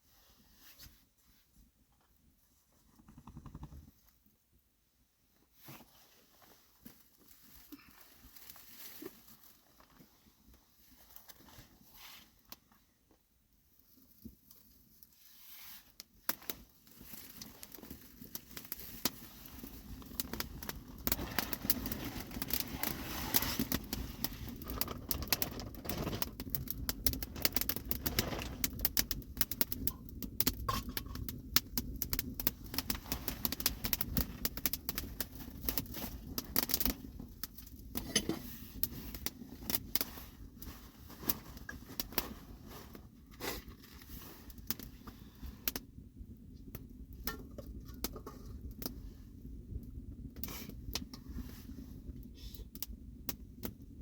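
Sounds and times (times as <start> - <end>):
dense crackling and clicking: 16.1 - 38.2, 38.8 - 42.5.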